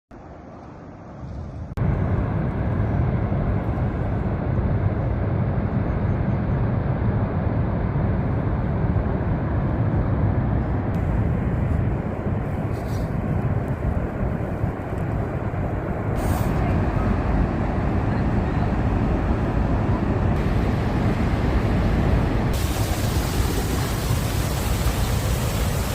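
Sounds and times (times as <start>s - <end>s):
waterfall roaring: 19.4s - 25.9s.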